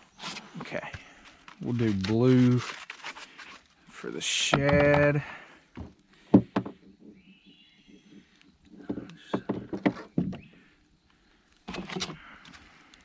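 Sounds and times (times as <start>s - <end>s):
fishing gear knocking and clattering: 4.5s - 5.2s.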